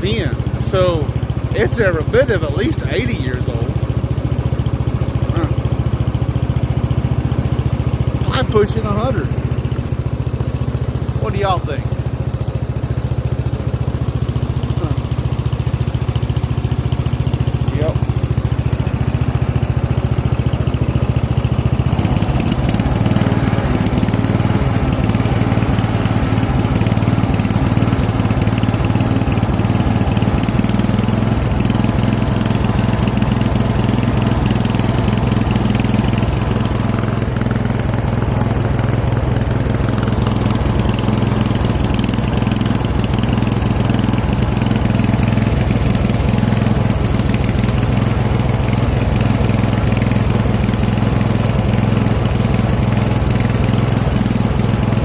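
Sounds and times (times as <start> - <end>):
riding lawn mower engine running: 0.0 - 55.0.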